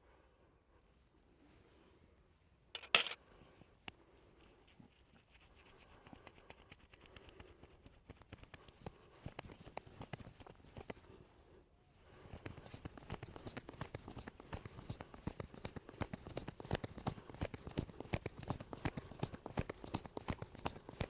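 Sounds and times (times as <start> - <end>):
small clicks and scrapes: 3.9 - 11.0, 12.0 - 21.0
hands rubbing on hair and skin: 4.1 - 11.1, 11.9 - 21.0.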